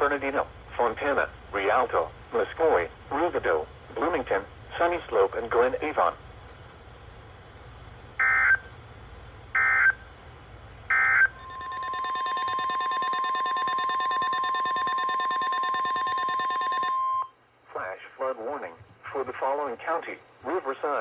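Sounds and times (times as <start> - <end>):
digital data tone bursts: 11.3 - 17.2
rapidly pulsing alert tone: 11.4 - 17.0.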